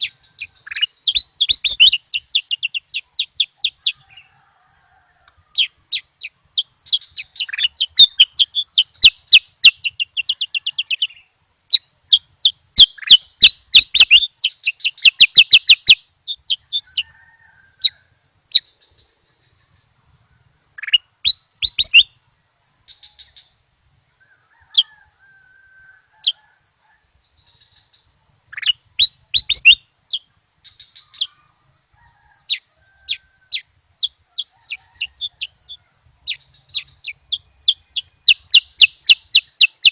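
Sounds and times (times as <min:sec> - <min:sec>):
steady high hiss: 0:00.0 - 0:24.2
bird chirping song: 0:00.0 - 0:39.9.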